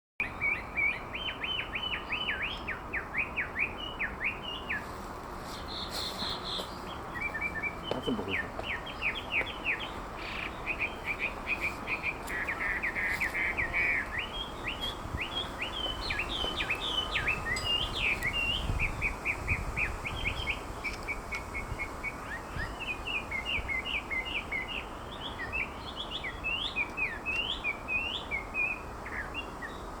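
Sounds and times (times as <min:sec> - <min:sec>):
bird whistling song: 0:10.7 - 0:29.8.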